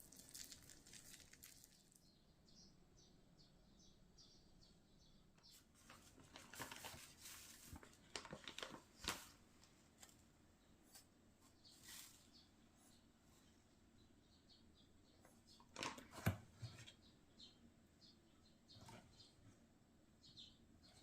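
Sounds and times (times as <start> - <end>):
food preparation rustling: 0.0 - 2.0, 5.5 - 12.6.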